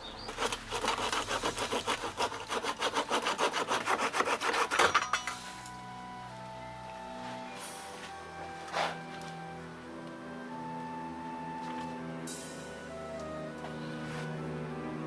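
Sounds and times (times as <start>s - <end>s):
music: 0.0s - 15.0s
hand tool rasping on timber: 0.3s - 5.0s.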